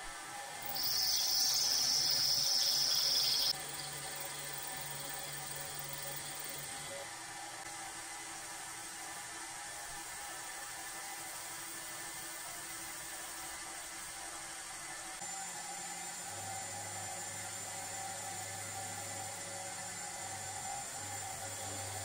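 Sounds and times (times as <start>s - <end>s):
thin high whine: 0.0s - 7.1s
machine whirring: 0.3s - 7.1s.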